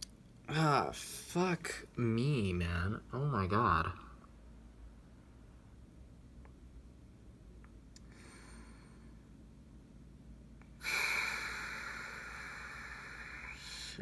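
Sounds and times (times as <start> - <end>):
faint breath: 8.0 - 9.4, 10.7 - 14.0.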